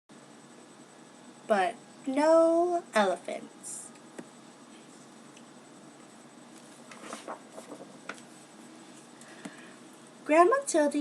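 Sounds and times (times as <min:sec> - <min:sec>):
pages of a book turning: 0:06.5 - 0:08.3.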